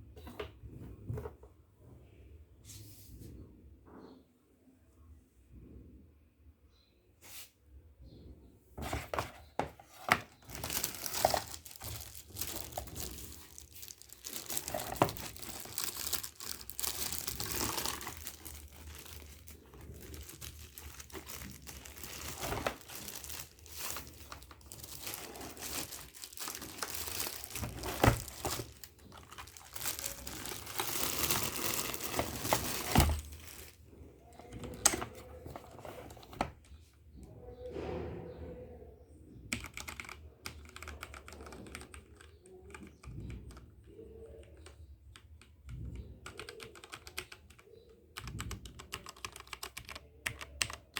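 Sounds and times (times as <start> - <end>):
packaging crinkling and tearing: 9.9 - 33.8.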